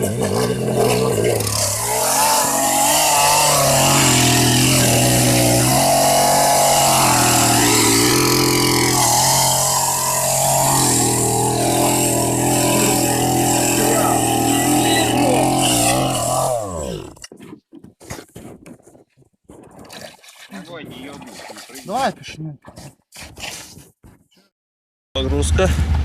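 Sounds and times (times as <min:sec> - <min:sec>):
small engine running: 0:00.0 - 0:17.3.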